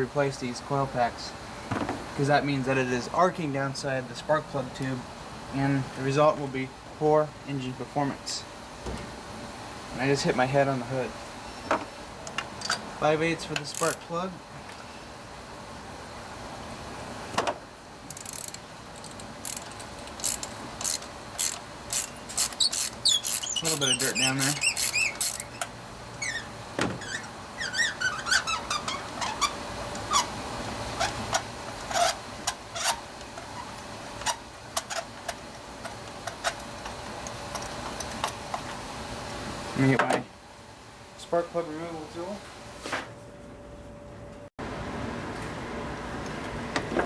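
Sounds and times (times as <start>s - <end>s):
ratchet wrench clicking: 13.6s - 14.0s, 18.1s - 25.7s.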